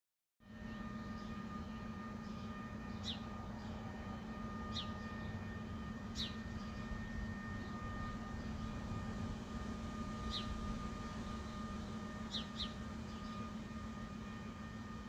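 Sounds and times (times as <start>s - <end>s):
low industrial hum: 0.5s - 15.0s.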